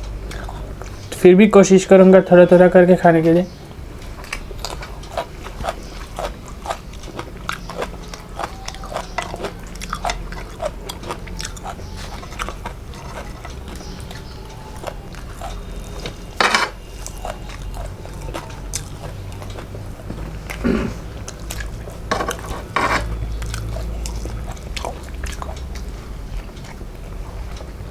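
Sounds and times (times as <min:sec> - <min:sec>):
person chewing and biting food: 0:04.2 - 0:16.2.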